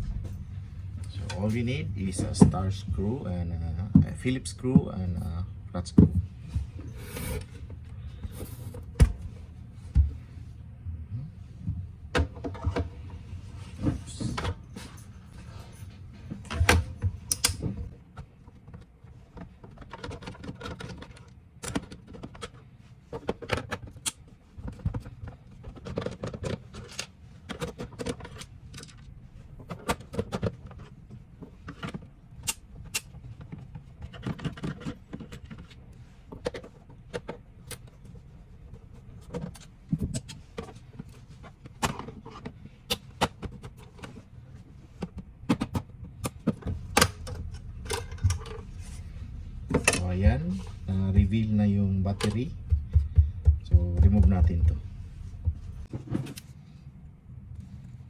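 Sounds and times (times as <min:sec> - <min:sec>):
tools clicking and rattling: 0:14.2 - 0:17.9, 0:18.7 - 0:31.0, 0:45.0 - 0:49.0.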